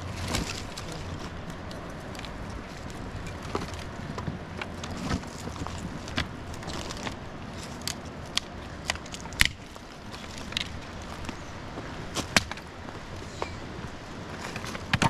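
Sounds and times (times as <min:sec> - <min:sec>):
sharp cracks and knocks: 0:00.0 - 0:11.3, 0:12.1 - 0:12.7
low outdoor background: 0:00.0 - 0:15.0.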